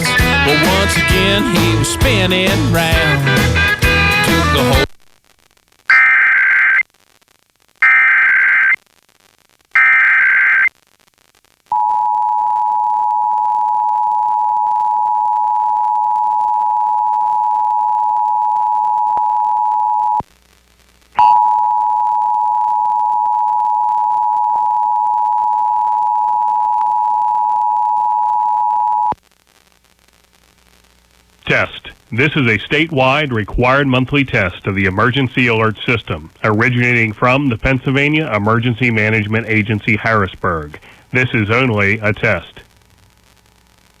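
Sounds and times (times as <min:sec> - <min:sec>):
data bursts: 0:05.9 - 0:06.8.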